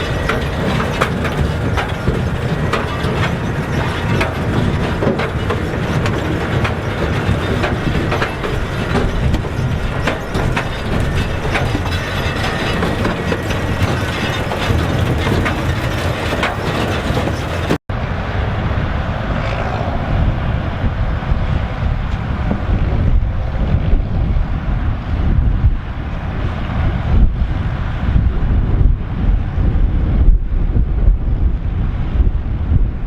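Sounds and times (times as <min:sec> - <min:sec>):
machinery rattling and clattering: 0:00.0 - 0:17.8
tractor engine rumble: 0:00.0 - 0:19.2.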